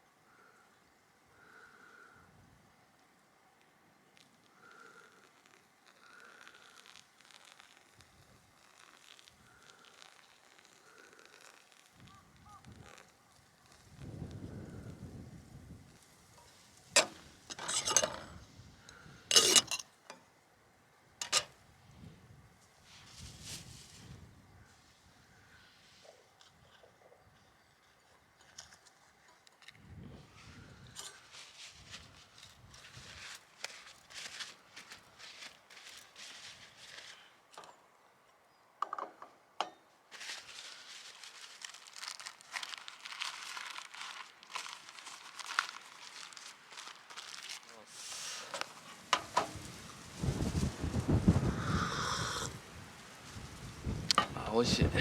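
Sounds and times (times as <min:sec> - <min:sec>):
crinkling and rustling: 0:03.6 - 0:20.2, 0:30.9 - 0:38.4, 0:40.0 - 0:51.4
metal cookware clinking and scraping: 0:17.0 - 0:18.4, 0:19.3 - 0:19.8, 0:21.2 - 0:21.5.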